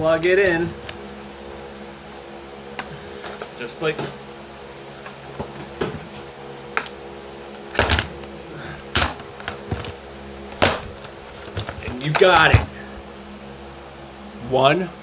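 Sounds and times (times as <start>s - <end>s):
fan humming: 0.0s - 13.8s
phone handling clicks and knocks: 0.5s - 1.0s, 2.8s - 4.2s, 5.0s - 7.0s, 7.6s - 10.0s, 10.6s - 12.8s.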